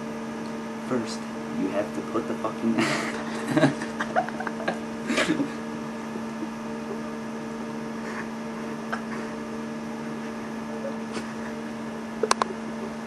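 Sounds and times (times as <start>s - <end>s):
electrical mains hum: 0.0s - 13.0s.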